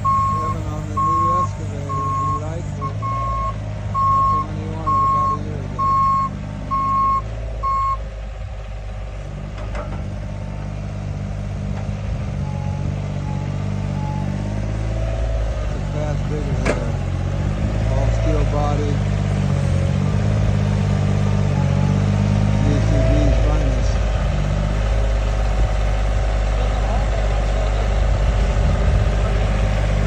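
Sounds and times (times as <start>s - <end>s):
travel alarm beeping: 0.0s - 8.0s
diesel engine running: 0.0s - 30.0s.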